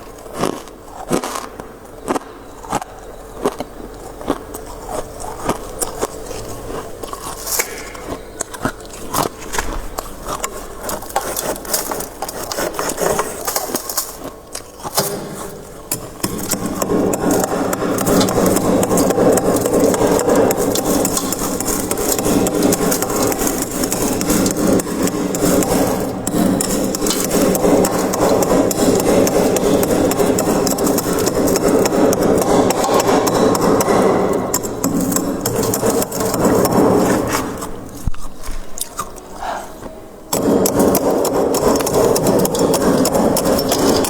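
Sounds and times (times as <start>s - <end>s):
frost being scraped: 8.7s - 39.8s.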